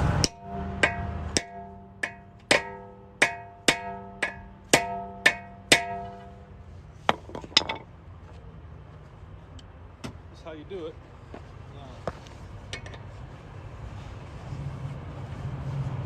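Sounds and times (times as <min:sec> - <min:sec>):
hammer striking metal socket: 0:00.2 - 0:06.5, 0:12.7 - 0:13.0.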